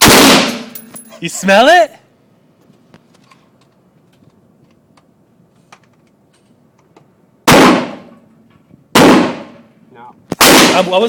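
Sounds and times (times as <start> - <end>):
rifle shot: 0.0 - 0.8, 7.4 - 8.2, 8.9 - 9.6, 10.3 - 11.0.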